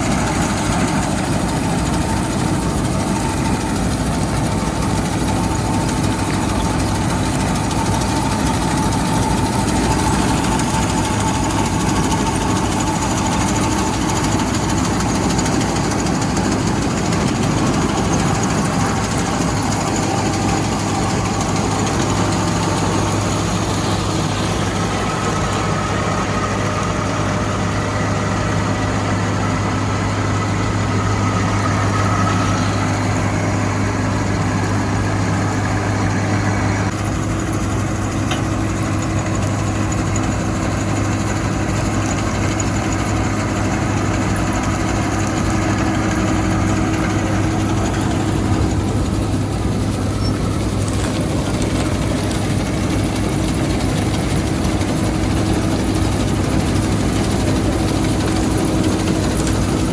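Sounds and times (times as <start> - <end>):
large engine running: 0.0 - 59.9.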